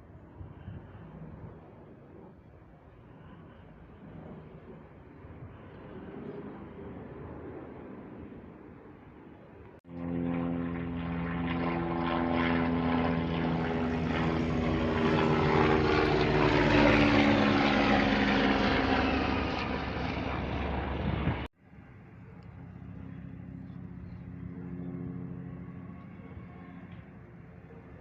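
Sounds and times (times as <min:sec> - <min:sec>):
aircraft passing overhead: 0:00.0 - 0:28.0.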